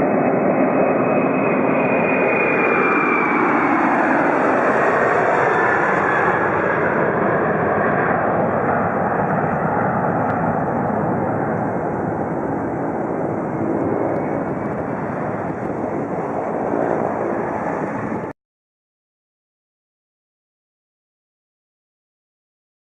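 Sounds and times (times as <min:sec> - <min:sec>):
jet engine at takeoff power: 0:00.0 - 0:18.4.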